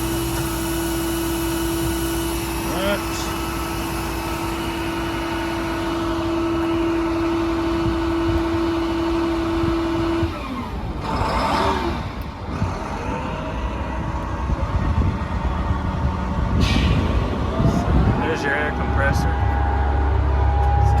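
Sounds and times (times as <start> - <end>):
diesel truck engine running: 0.0 - 21.0
steady whine: 0.0 - 21.0
brief rush of noise: 16.6 - 18.2.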